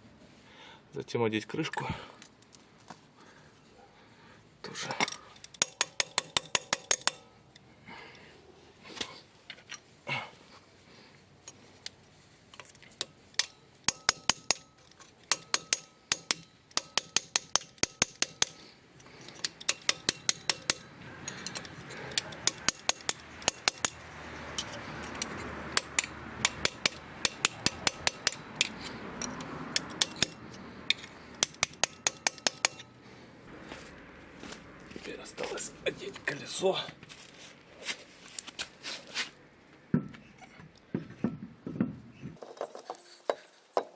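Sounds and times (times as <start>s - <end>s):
metallic clicks of hand tools: 4.9s - 7.7s, 11.5s - 33.0s.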